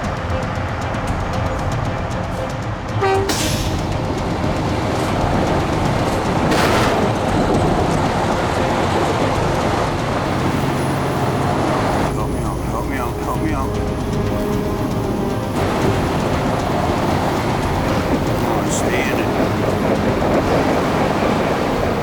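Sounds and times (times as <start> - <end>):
background music: 0.0 - 22.0
diesel truck engines under load: 0.0 - 22.0
truck horn toot: 2.4 - 4.2, 8.3 - 21.6
air brake hissing bursts: 3.0 - 4.0.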